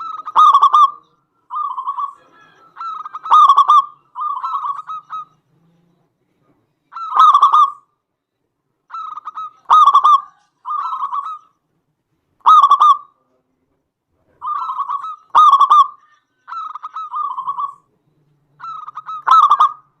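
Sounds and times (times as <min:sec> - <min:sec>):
dove cooing: 0:00.0 - 0:06.1, 0:06.9 - 0:07.9, 0:08.9 - 0:11.5, 0:12.4 - 0:13.1, 0:14.4 - 0:20.0.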